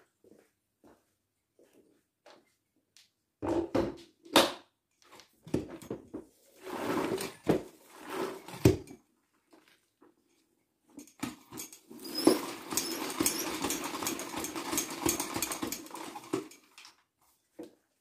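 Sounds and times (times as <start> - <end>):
knocks and clatters of objects: 3.4 - 6.4, 7.1 - 17.8.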